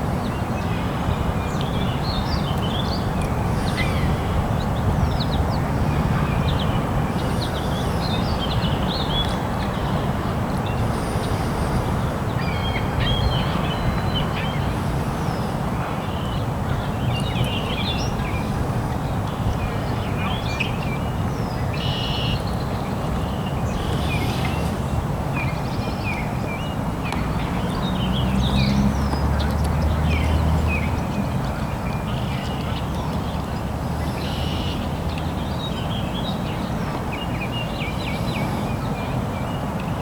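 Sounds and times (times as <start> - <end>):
motorboat engine hum: 0.0 - 39.9
birds chirping: 1.4 - 40.0.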